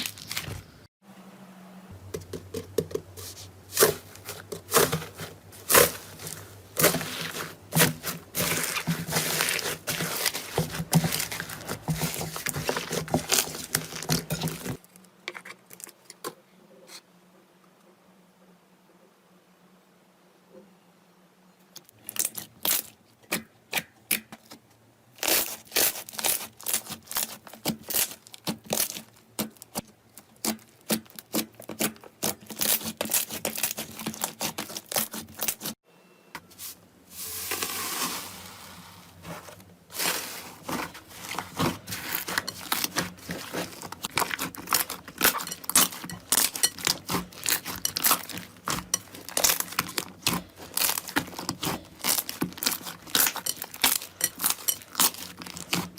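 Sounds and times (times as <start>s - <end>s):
slime crackling and popping: 25.2s - 29.7s, 41.6s - 55.9s.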